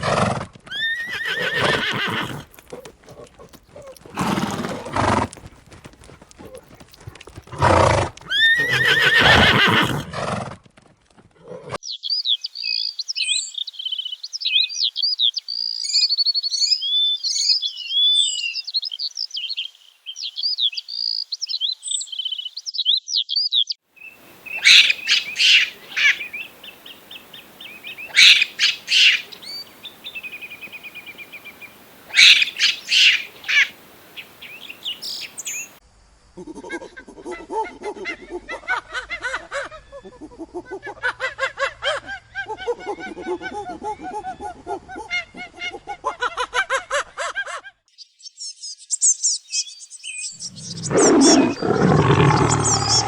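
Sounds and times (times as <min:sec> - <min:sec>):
loud animal calls: 0:00.7 - 0:05.3, 0:07.5 - 0:10.1, 0:24.2 - 0:35.8, 0:50.4 - 0:53.0
harsh bird squawks: 0:00.8 - 0:02.5, 0:07.6 - 0:10.0, 0:24.3 - 0:35.7, 0:50.4 - 0:53.0
songbird chirping: 0:00.8 - 0:10.0, 0:11.8 - 0:35.8, 0:47.9 - 0:53.0.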